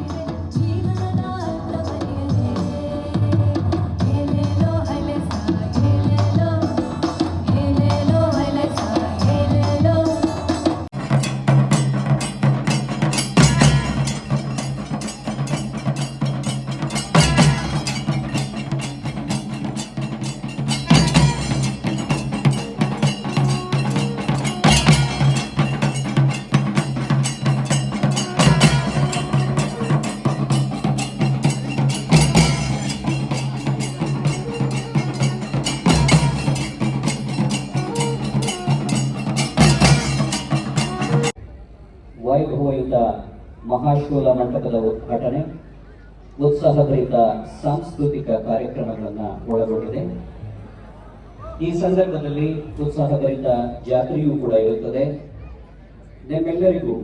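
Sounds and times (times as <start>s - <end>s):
clicking percussion music: 10.9s - 41.4s.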